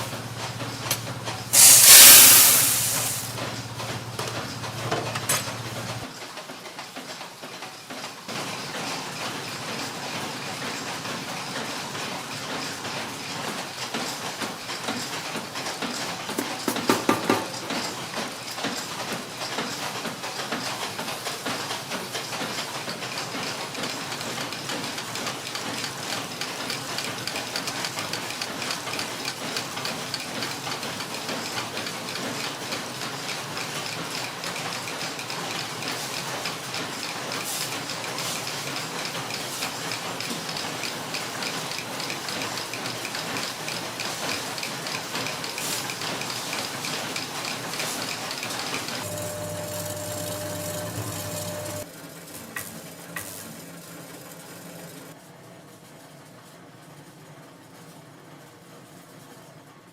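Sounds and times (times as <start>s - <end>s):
machine hum with held tone: 49.0s - 51.8s.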